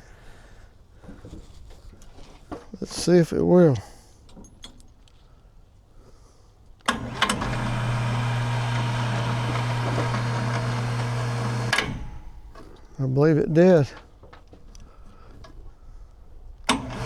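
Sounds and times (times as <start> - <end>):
electric winch motor humming: 6.9 - 12.9, 16.7 - 17.0.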